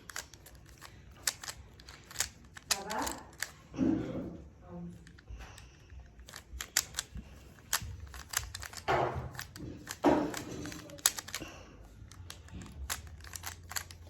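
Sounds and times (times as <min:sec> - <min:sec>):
puzzle cube clicking as turned: 0:00.0 - 0:03.8, 0:04.9 - 0:14.0
rasping cube turns: 0:00.0 - 0:03.8, 0:04.9 - 0:14.0.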